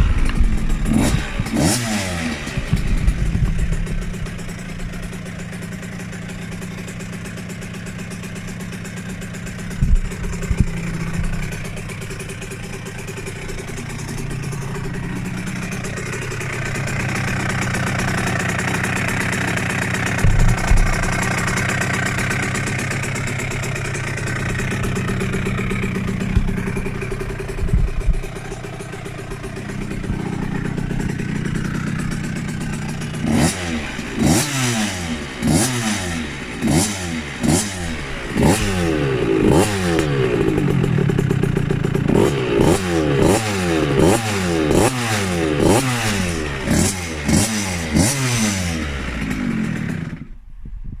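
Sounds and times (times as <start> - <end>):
two-stroke engine idling and revving: 0.0 - 50.5.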